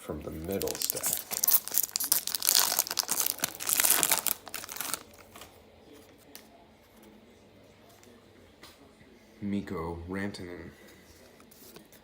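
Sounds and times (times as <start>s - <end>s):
foil wrapper crinkling and tearing: 0.3s - 5.5s
handling sounds: 0.3s - 5.6s.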